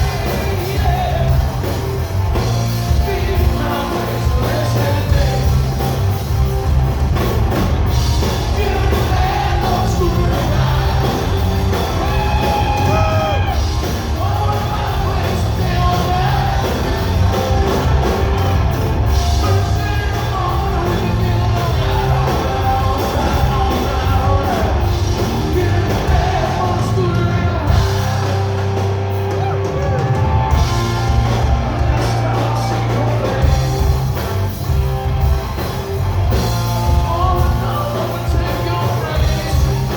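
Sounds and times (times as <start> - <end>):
live rock band playing: 0.0 - 39.9
person singing: 8.2 - 18.3, 19.3 - 30.2.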